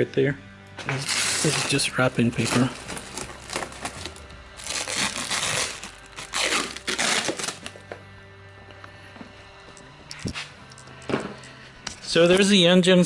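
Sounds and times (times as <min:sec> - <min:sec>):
background music: 0:00.0 - 0:13.0
packing paper rustling and tearing: 0:00.3 - 0:06.5.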